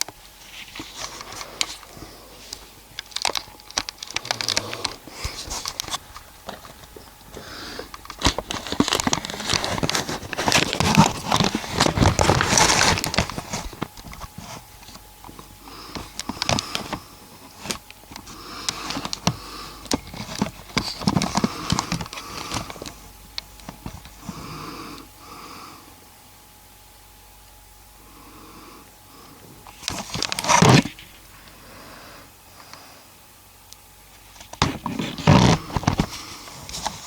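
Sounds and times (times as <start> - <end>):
sharp clicks and crackles: 0.0 - 24.2
rustling and crinkling: 0.0 - 24.7, 29.6 - 31.6, 34.1 - 37.0
sniffing breaths: 0.6 - 2.9, 4.0 - 14.7, 15.3 - 23.2, 24.0 - 26.0.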